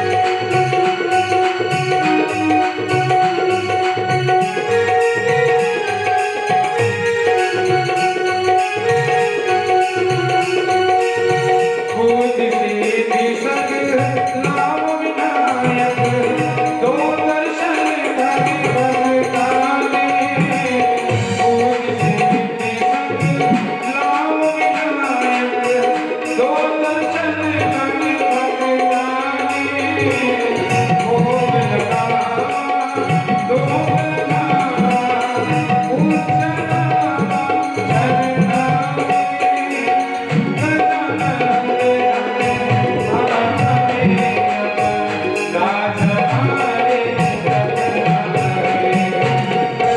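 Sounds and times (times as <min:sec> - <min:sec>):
devotional music: 0:00.0 - 0:49.9
sustained melodic accompaniment: 0:00.0 - 0:49.9
tabla playing a rhythm: 0:00.0 - 0:49.9.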